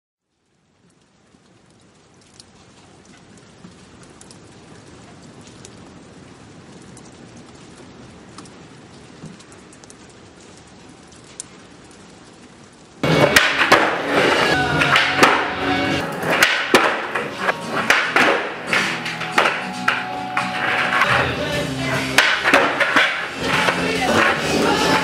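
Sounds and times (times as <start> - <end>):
steady rain falling: 0.2 - 25.0
sharp drip ticks: 0.4 - 12.9
loud music: 13.0 - 25.0.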